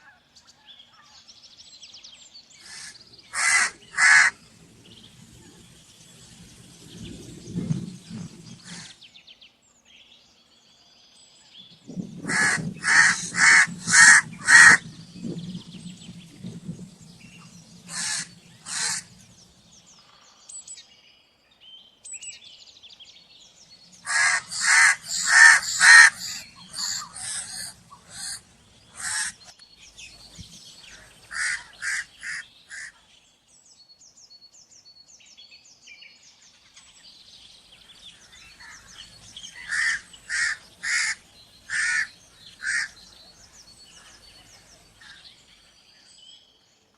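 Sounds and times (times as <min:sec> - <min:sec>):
crow cawing: 0:02.6 - 0:04.4, 0:12.3 - 0:14.8, 0:17.9 - 0:19.1, 0:24.1 - 0:28.4, 0:29.0 - 0:29.4, 0:31.0 - 0:33.0, 0:38.6 - 0:43.0.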